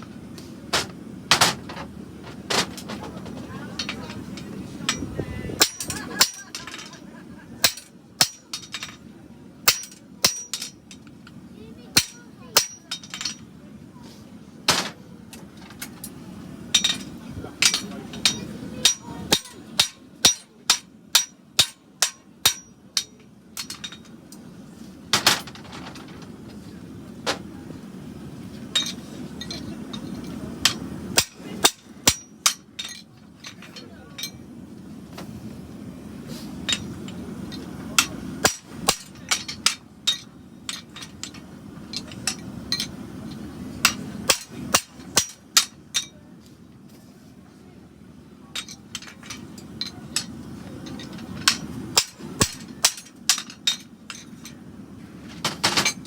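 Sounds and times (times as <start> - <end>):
steady low hum: 0.0 - 56.0
hammer striking steel on anvil: 4.9 - 6.9, 7.6 - 9.0, 9.7 - 10.8, 12.0 - 13.4, 16.8 - 24.1, 30.6 - 33.0, 38.0 - 41.4, 43.8 - 46.2, 51.0 - 54.5.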